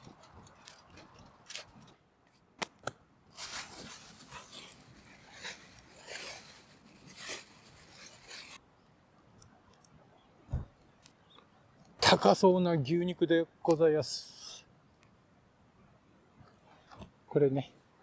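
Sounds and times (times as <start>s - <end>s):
aluminium foil crinkling: 0.0s - 2.0s, 3.4s - 8.6s.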